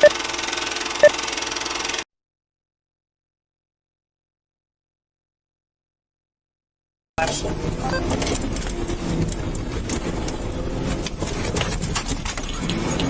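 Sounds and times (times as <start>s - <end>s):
moving car rumble: 7.2s - 13.0s
clicks and rattles: 8.1s - 13.0s.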